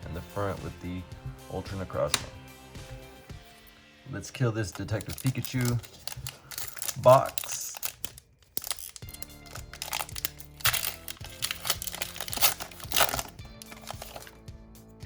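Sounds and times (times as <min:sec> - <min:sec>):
background music: 0:00.0 - 0:07.9, 0:08.6 - 0:15.0
foil wrapper crinkling and tearing: 0:04.6 - 0:14.4.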